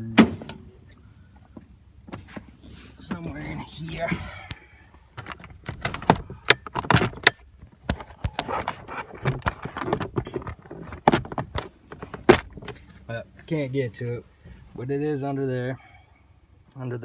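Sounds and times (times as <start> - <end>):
clicks and knocks of car trim: 5.2 - 12.8.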